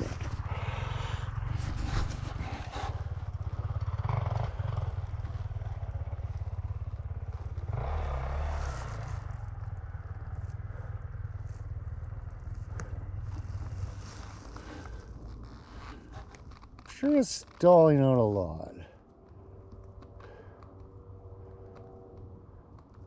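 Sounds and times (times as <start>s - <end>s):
dirt bike engine low revs: 0.0s - 17.6s.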